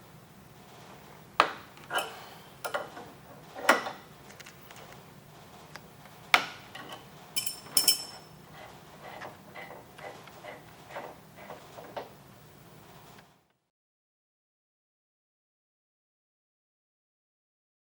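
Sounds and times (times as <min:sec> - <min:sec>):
wrench clinking against metal tool: 0:01.9 - 0:02.8, 0:06.9 - 0:08.4.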